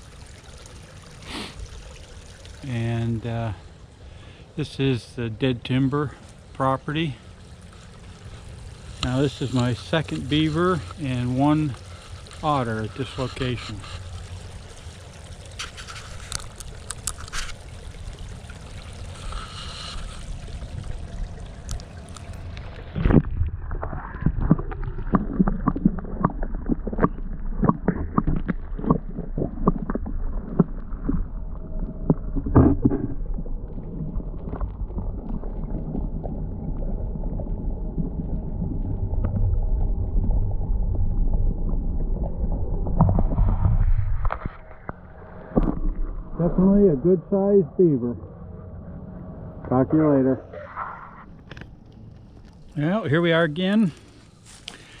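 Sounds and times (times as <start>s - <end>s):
water sloshing and gurgling: 0.0s - 55.0s
steady low rumble: 4.9s - 55.0s.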